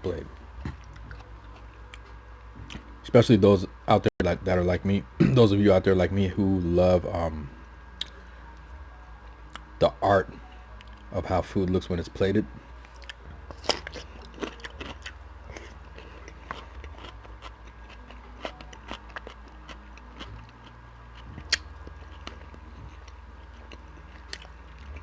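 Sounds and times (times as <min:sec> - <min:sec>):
low steady hum: 0:00.0 - 0:25.0
chewing clicks and smacks: 0:12.8 - 0:25.0.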